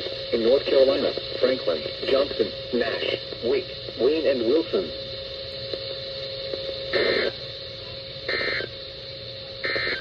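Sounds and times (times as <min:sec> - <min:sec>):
radio hiss: 0:00.0 - 0:10.0
steady hum: 0:00.0 - 0:10.0.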